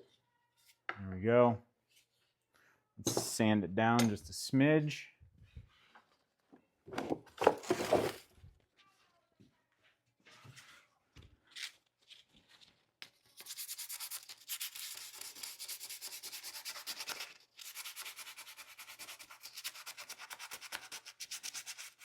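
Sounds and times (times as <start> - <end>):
sandpaper rubbing on wood: 13.5 - 22.0.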